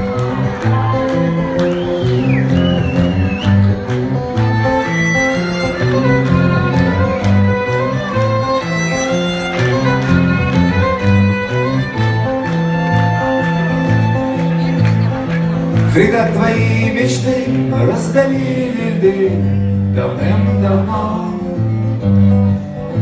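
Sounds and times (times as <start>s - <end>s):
rock band playing: 0.0s - 23.0s
violin melody: 3.6s - 15.7s.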